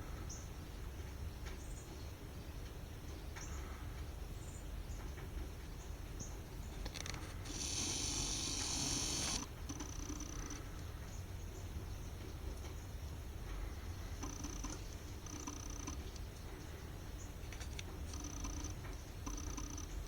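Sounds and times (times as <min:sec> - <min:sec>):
small birds chirping: 0:00.0 - 0:20.0
hissy buzzing sound: 0:07.5 - 0:09.5.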